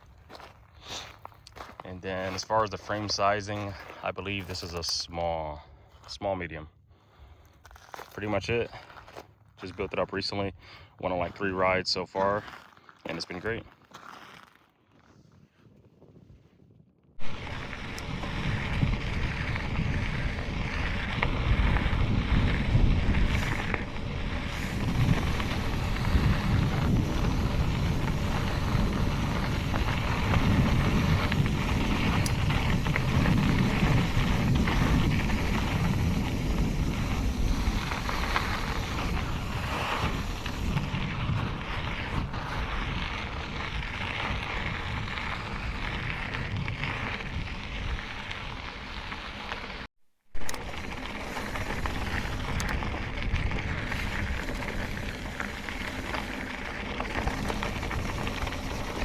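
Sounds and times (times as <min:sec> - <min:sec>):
wind buffeting microphone: 0:15.4 - 0:49.5, 0:50.4 - 0:59.0.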